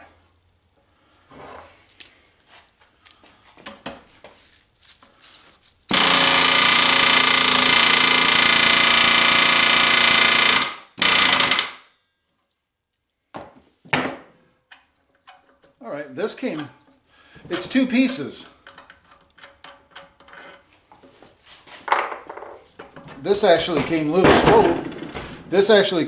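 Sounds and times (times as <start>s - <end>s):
pneumatic air hammer: 5.9s - 11.8s.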